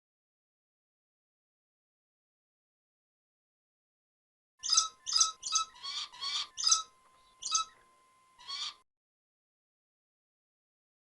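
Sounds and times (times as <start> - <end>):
macaw squawking: 4.6 - 7.8, 8.4 - 8.8.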